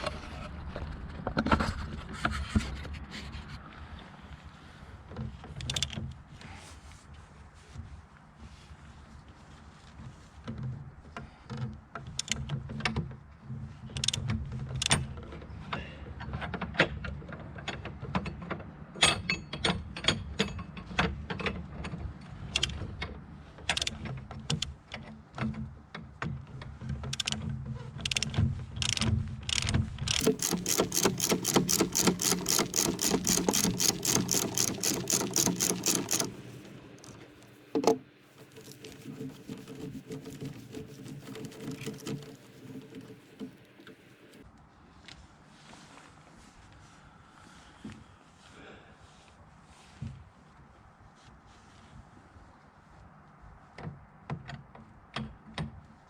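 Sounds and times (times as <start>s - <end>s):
ratchet wrench clicking: 30.1s - 44.2s.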